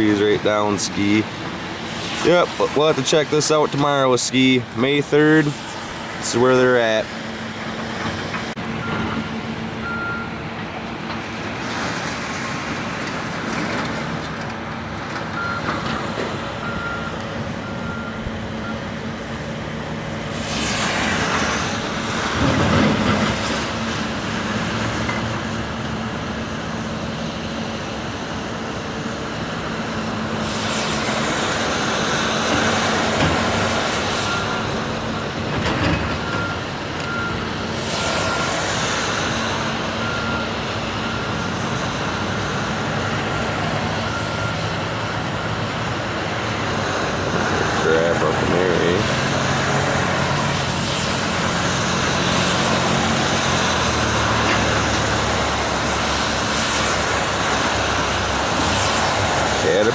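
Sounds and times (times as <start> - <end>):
diesel engine hum: 0.0 - 59.9
reversing alarm beeping: 9.8 - 10.4, 15.3 - 15.9, 16.6 - 19.0, 31.1 - 49.8, 51.2 - 57.2.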